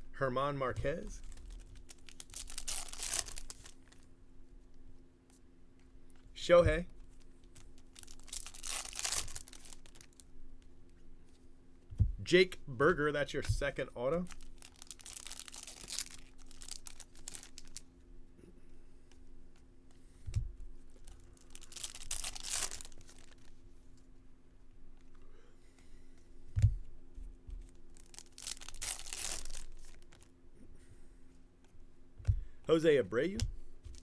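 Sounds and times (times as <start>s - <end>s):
faint hum: 0.0s - 34.0s
foil wrappers tearing and crinkling: 1.0s - 4.1s, 7.4s - 10.2s, 14.2s - 17.9s, 21.0s - 23.5s, 27.9s - 30.3s.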